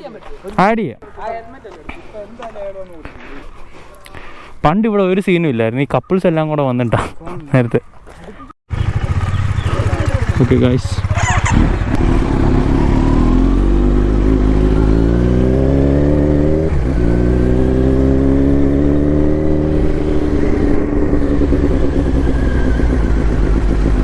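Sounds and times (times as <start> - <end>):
motorcycle engine revving: 8.7 - 24.0.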